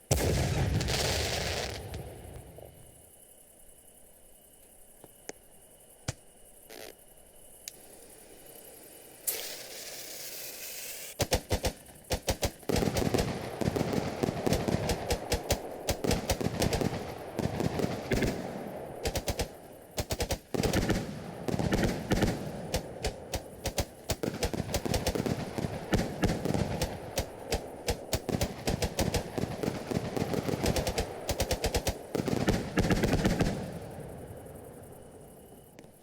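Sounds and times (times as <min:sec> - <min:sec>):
firecrackers cracking: 0:00.0 - 0:02.9
fuse hiss: 0:00.6 - 0:11.4.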